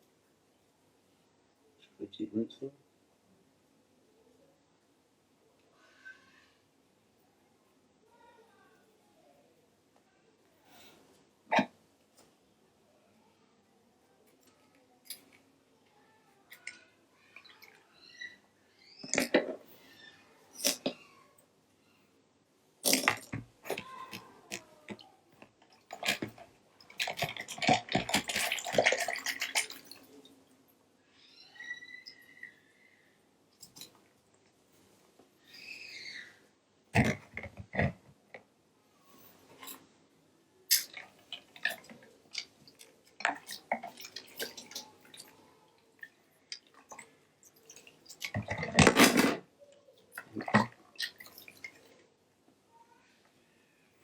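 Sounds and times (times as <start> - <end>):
water sloshing in a bucket: 22.9 - 30.4, 40.8 - 49.5, 50.1 - 52.0.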